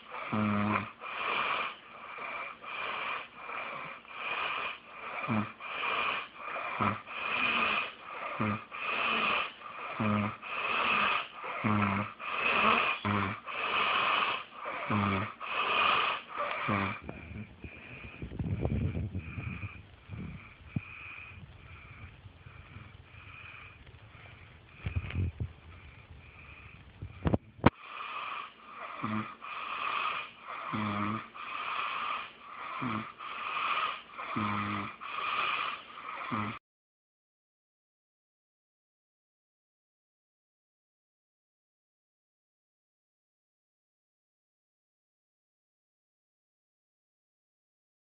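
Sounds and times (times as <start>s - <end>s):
irregular breathing: 0.0s - 36.6s
loud snoring: 0.0s - 36.6s.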